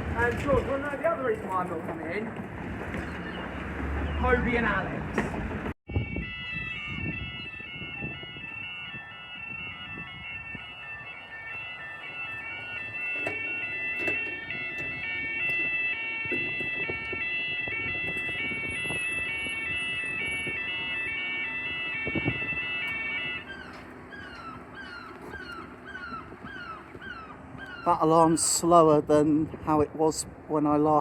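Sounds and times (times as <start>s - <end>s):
two-tone electronic warning alarm: 5.9s - 28.0s.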